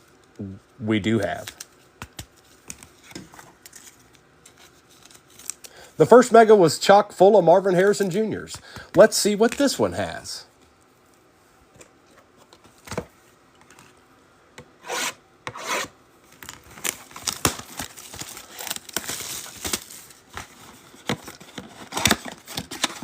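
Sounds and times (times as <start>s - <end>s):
rustling and clicking of packs: 16.3s - 23.0s.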